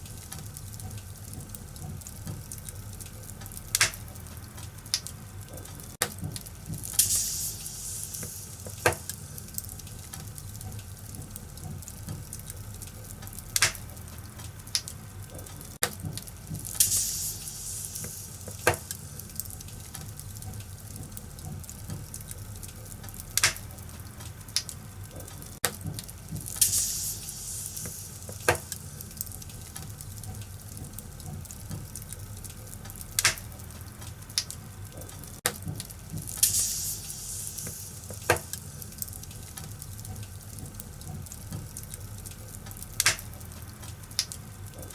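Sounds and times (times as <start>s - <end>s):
fire crackling and popping: 0.0s - 44.9s
fire hissing: 0.0s - 44.9s
low fire rumble: 0.0s - 44.9s.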